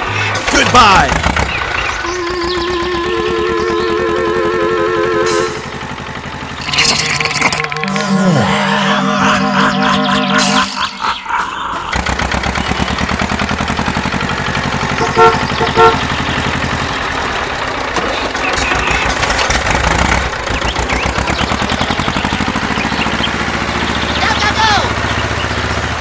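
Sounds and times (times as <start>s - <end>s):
small engine chugging: 0.0s - 26.0s
short horn beeps: 15.0s - 16.2s.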